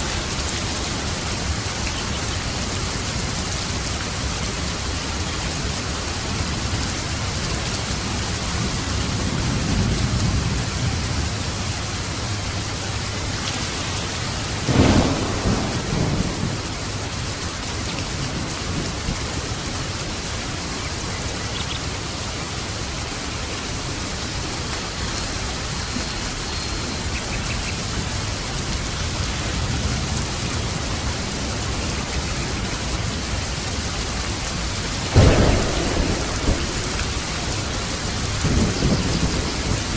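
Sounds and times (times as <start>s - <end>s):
thunder rumbling: 0.0s - 22.9s, 27.0s - 39.9s
heavy rain: 0.0s - 39.9s
sharp thunderclap: 14.6s - 17.2s, 35.0s - 39.9s.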